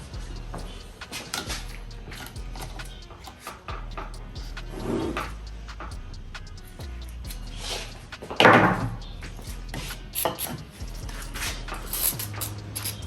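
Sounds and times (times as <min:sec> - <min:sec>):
tools clinking against metal casing: 0:07.2 - 0:13.0.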